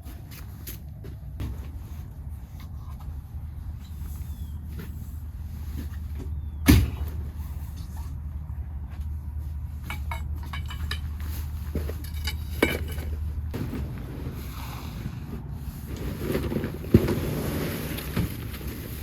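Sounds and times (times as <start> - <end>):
camping gear clicking and clinking: 9.4 - 14.0.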